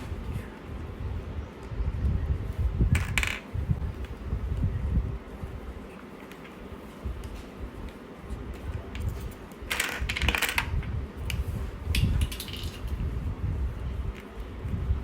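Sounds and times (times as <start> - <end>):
plastic pieces clicking and clattering: 12.2 - 12.9.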